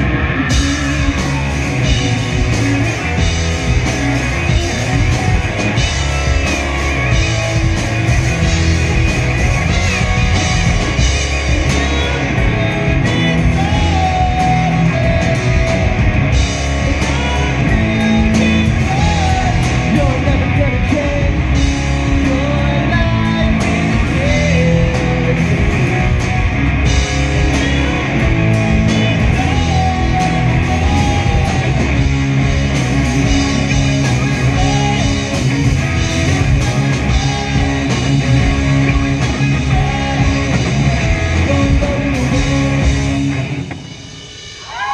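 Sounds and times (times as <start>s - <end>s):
live rock band playing: 0.0s - 44.9s
lead singer singing: 9.6s - 26.2s, 27.2s - 43.5s.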